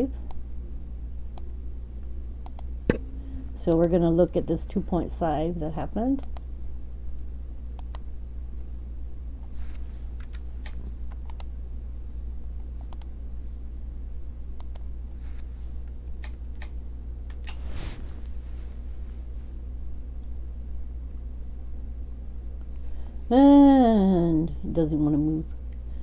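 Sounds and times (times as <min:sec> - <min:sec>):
low electrical hum: 0:00.0 - 0:26.0
computer mouse and key clicks: 0:02.4 - 0:02.7, 0:07.8 - 0:08.0, 0:10.2 - 0:11.5, 0:12.8 - 0:13.1, 0:14.6 - 0:14.9.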